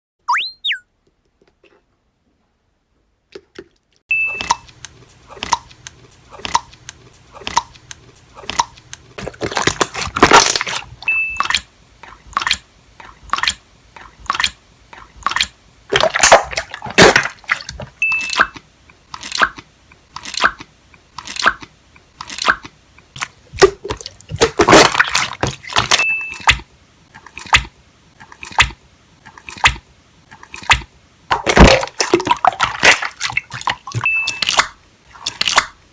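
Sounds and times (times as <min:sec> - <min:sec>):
slime splats and squelches: 0:15.2 - 0:18.5, 0:20.2 - 0:26.6, 0:30.4 - 0:35.8.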